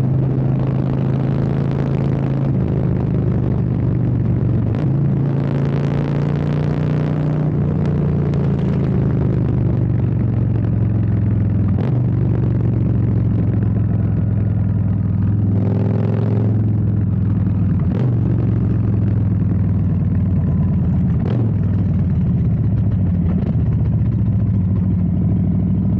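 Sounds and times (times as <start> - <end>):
motorcycle engine idling: 12.4 - 15.4, 16.6 - 25.9.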